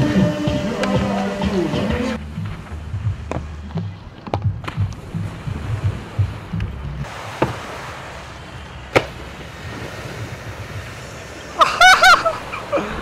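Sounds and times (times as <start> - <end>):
wind: 0.0 - 13.0
sharp knocks: 8.9 - 9.2.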